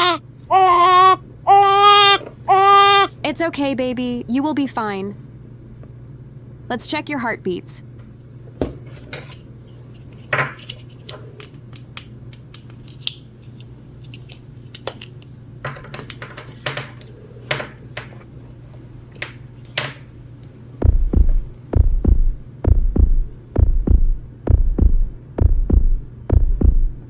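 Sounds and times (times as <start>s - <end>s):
faint steady hum: 0.0s - 27.0s
plastic toys clicking and tapping: 14.7s - 18.1s
recorded heartbeat thumps: 20.8s - 27.0s.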